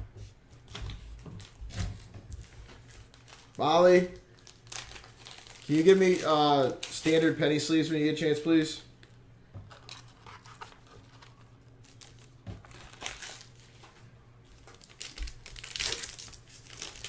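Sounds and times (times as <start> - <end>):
plastic wrapper crinkling and tearing: 2.4 - 7.4, 9.7 - 17.0.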